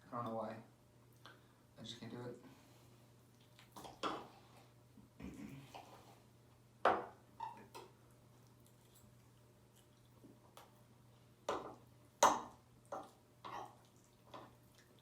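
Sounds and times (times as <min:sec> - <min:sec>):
mouth sounds of eating: 0:04.6 - 0:06.4, 0:08.1 - 0:11.3.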